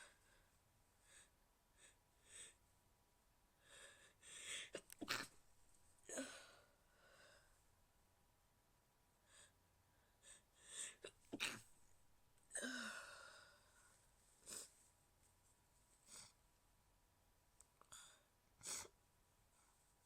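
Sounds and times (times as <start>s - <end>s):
woman stifling sneezes: 11.3s - 11.7s.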